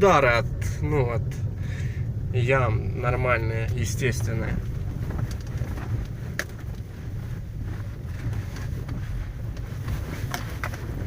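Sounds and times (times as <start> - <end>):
low road rumble inside car: 0.0 - 11.0.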